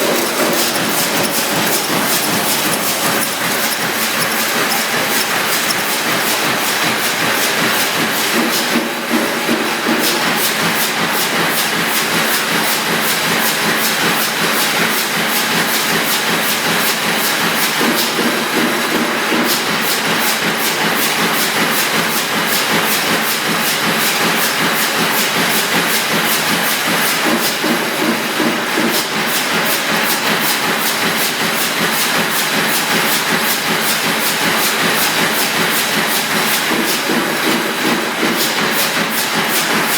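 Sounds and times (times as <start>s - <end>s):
press machine noise: 0.0s - 9.8s.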